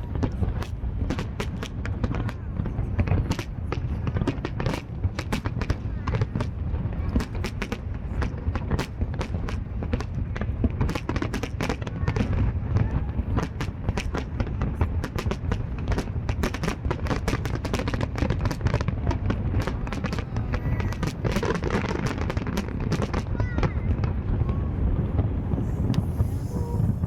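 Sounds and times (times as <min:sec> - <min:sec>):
fireworks bangs and crackles: 0:00.0 - 0:27.0
low rumble: 0:18.8 - 0:27.0.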